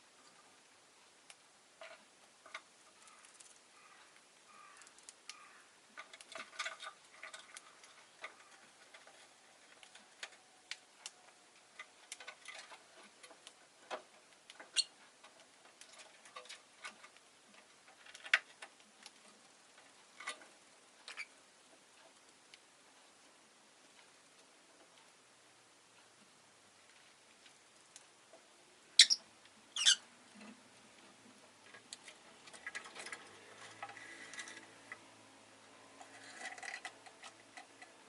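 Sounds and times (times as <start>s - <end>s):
faint bird chirps: 3.0s - 5.7s, 29.0s - 30.0s.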